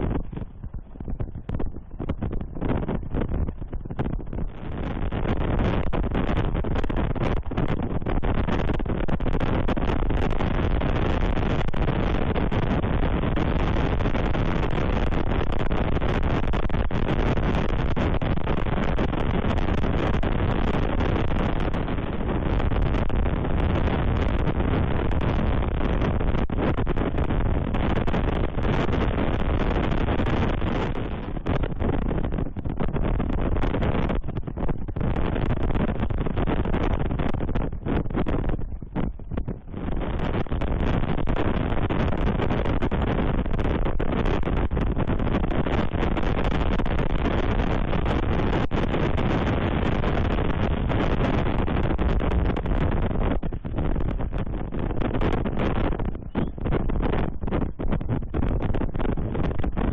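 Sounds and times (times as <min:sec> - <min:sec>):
strong wind blowing on microphone: 0:00.0 - 0:59.9.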